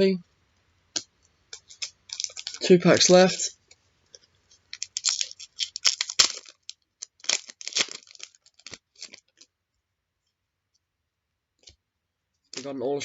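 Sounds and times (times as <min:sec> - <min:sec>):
wrapper being torn and crumpled: 0:01.6 - 0:03.5, 0:04.7 - 0:09.5.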